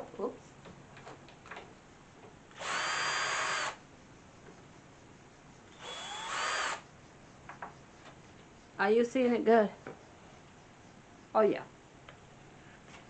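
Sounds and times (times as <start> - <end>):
power drill motor whine: 2.5 - 3.8, 5.7 - 6.8.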